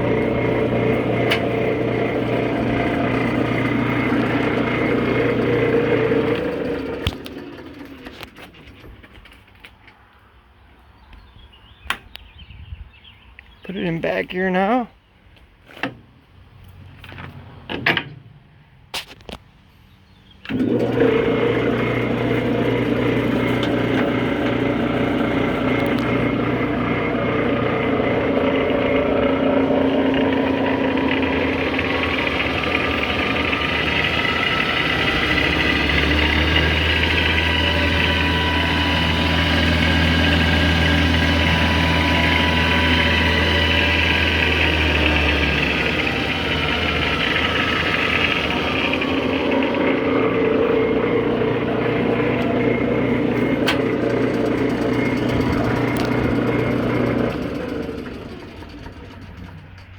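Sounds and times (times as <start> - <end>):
metal lathe running with gear whine: 0.0 - 8.3, 20.5 - 59.6
lathe levers clunking: 50.7 - 59.9.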